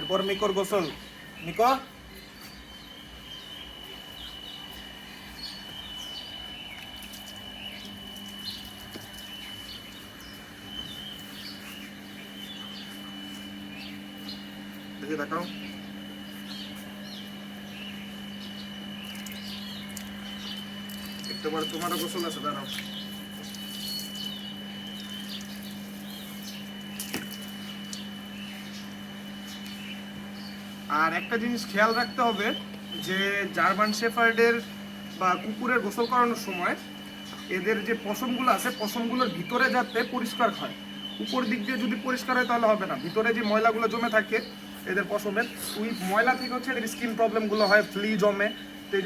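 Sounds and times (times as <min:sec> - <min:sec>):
birds chirping: 0:00.0 - 0:49.0
steady low hum: 0:00.0 - 0:49.0
water running and splashing: 0:06.7 - 0:10.5, 0:19.0 - 0:28.0.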